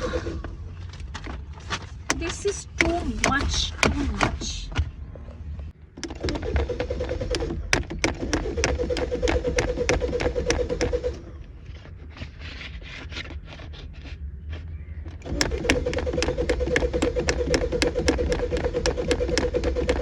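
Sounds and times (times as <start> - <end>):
engine cranking without starting: 2.1 - 4.7, 5.7 - 13.7, 15.1 - 20.0
starter motor whine: 2.1 - 11.9, 15.0 - 20.0
scattered clicks: 15.1 - 20.0.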